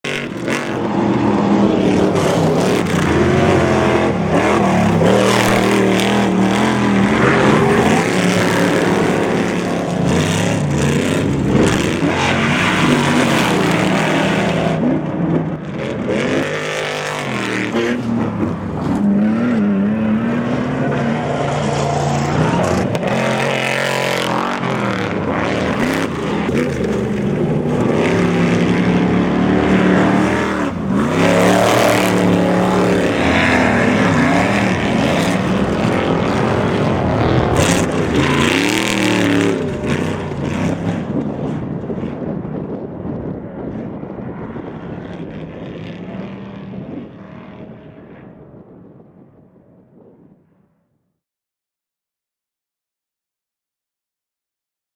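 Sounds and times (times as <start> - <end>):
truck engine revving: 0.0 - 41.7.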